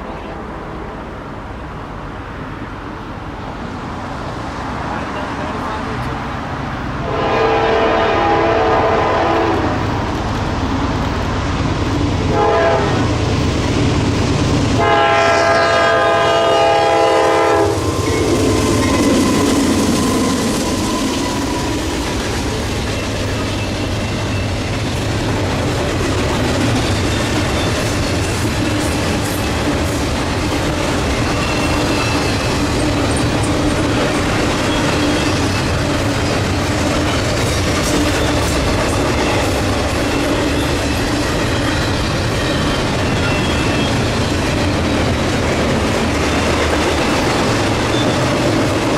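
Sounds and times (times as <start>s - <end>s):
locomotive horn blasts: 7.0s - 9.8s, 12.3s - 13.1s, 14.8s - 17.8s
train wheels clattering over rail joints: 17.8s - 48.9s.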